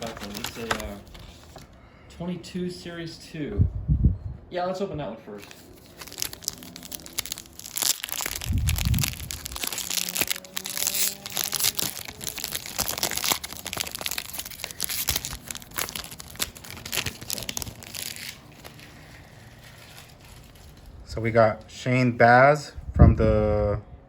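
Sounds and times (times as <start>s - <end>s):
wrapper tearing and crinkling: 0.0s - 1.6s, 5.4s - 20.9s
wind rumble on microphone: 3.6s - 4.5s, 8.2s - 9.8s, 22.8s - 24.0s.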